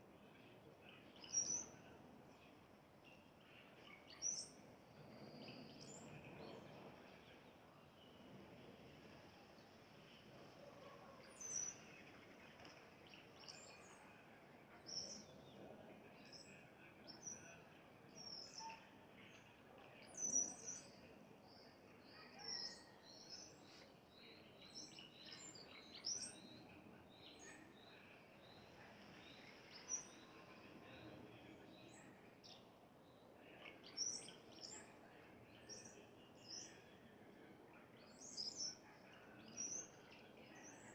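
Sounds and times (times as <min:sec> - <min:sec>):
small birds chirping: 0:14.8 - 0:37.0, 0:37.8 - 0:40.9.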